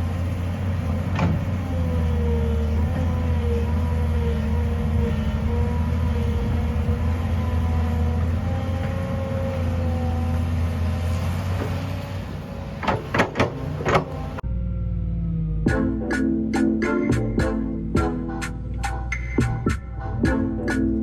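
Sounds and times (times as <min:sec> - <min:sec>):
tractor engine running: 0:00.0 - 0:21.0
sharp knocks: 0:12.8 - 0:14.2.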